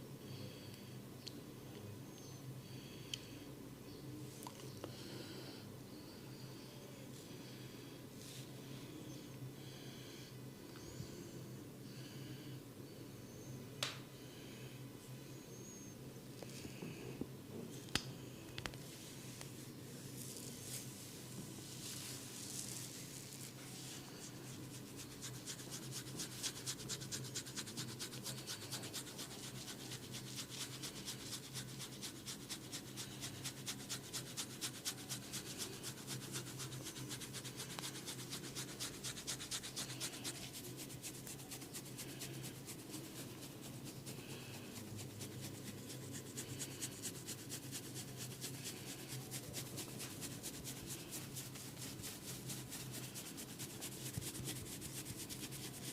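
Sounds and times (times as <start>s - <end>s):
rubbing and scratching on hair: 18.9s - 55.9s.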